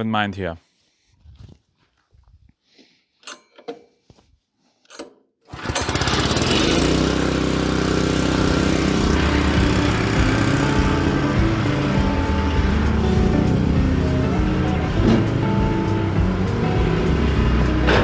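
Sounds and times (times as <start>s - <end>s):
engine starting and running: 5.5s - 18.0s.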